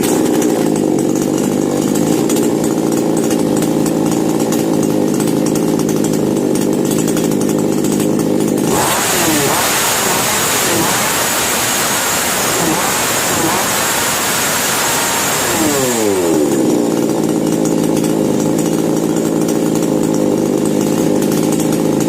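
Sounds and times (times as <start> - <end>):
chainsaw engine running and revving: 0.0 - 22.0.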